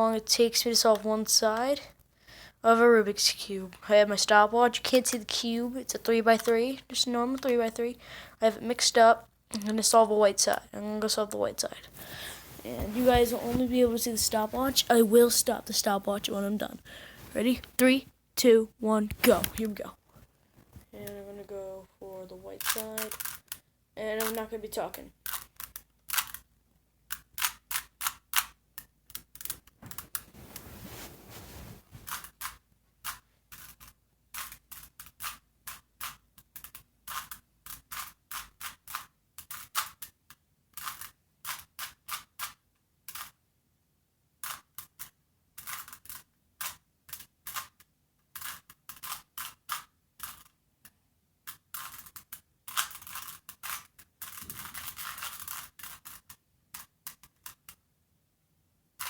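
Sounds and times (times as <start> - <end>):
puzzle cube plastic clicks: 9.5 - 10.6, 22.5 - 26.5, 27.1 - 30.2, 32.1 - 43.4, 44.4 - 57.8.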